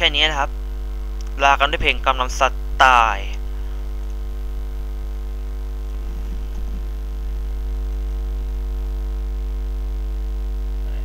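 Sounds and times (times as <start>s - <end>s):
electrical mains hum: 0.0s - 11.0s.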